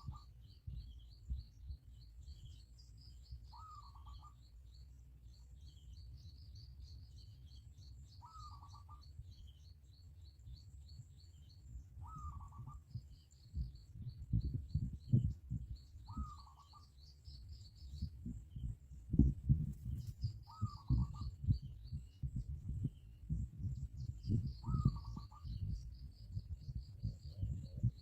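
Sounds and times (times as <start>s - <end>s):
high rapid bird chirps: 12.0s - 28.0s
low rumble: 17.6s - 28.0s.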